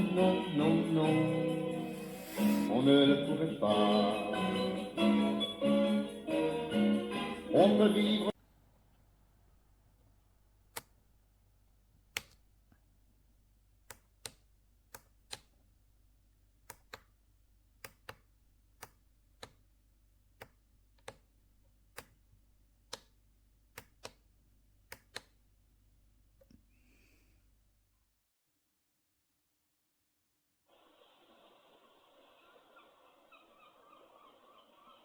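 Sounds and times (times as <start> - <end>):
plastic buttons clicking: 13.8 - 15.6, 16.6 - 19.7, 20.3 - 25.4.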